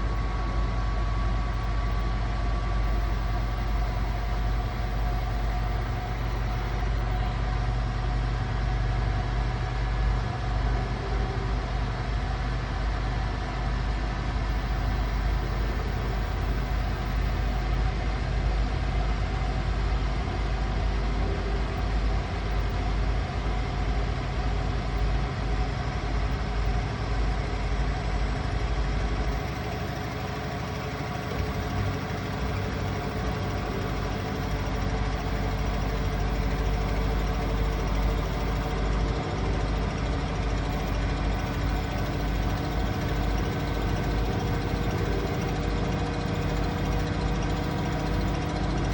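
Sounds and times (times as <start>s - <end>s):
washing machine spinning: 0.0s - 7.9s, 14.5s - 17.7s, 29.1s - 48.9s.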